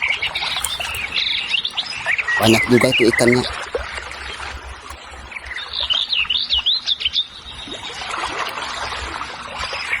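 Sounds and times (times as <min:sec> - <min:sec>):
steady background hiss: 0:00.1 - 0:03.6.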